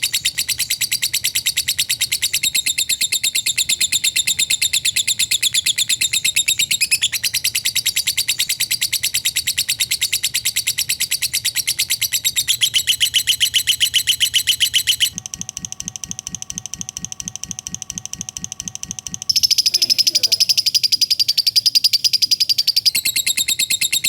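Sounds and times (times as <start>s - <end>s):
bird fast chattering trill: 0.0s - 15.2s, 17.9s - 24.0s.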